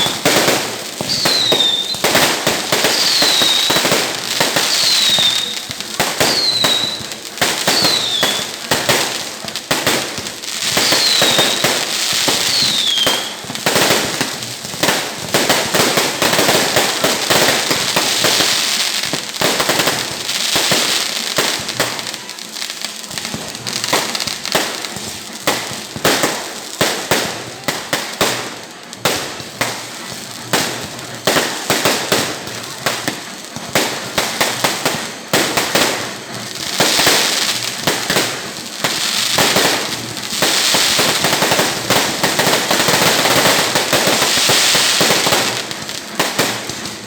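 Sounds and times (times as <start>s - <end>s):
falling firework whistles: 0.0s - 9.2s, 10.6s - 22.3s
fireworks bangs and crackling: 0.0s - 47.0s.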